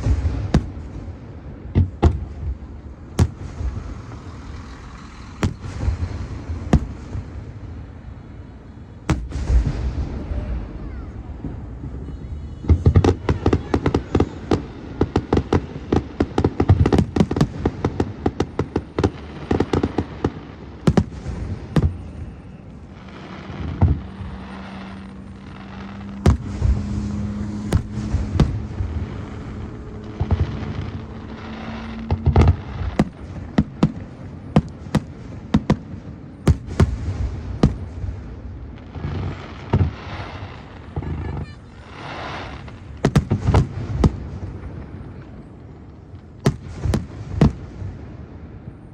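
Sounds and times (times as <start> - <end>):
firework shells booming: 0.0 - 48.9
rapid firework crackling: 0.0 - 48.9
steady low drone: 21.4 - 34.5.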